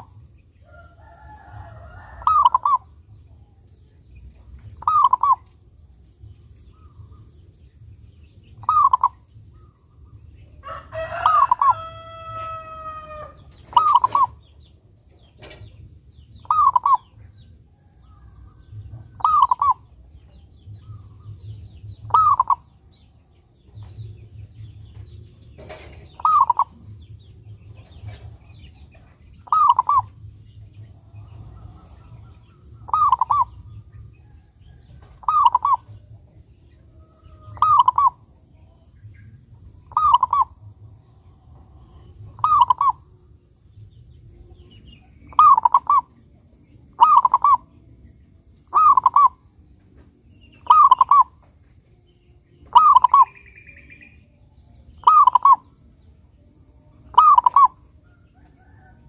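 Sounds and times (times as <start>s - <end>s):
faint low hum: 0.0s - 59.0s
dove cooing: 1.0s - 3.0s, 4.8s - 5.5s, 8.6s - 9.7s, 11.1s - 14.4s, 16.4s - 17.1s, 19.2s - 19.8s, 22.1s - 22.7s, 25.7s - 26.9s, 29.4s - 30.2s, 31.4s - 33.7s, 35.2s - 36.0s, 37.3s - 38.3s, 39.9s - 40.6s, 42.3s - 43.1s, 45.3s - 46.2s, 46.9s - 47.7s, 48.7s - 49.4s, 50.6s - 51.4s, 52.7s - 54.0s, 55.0s - 55.6s, 57.1s - 57.8s.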